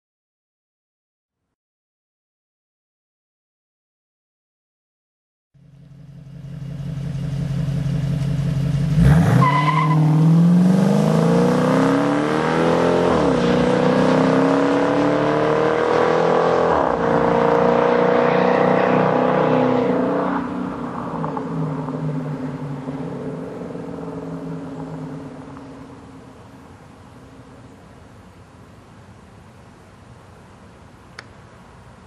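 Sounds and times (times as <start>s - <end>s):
car engine accelerating hard: 5.8s - 26.0s.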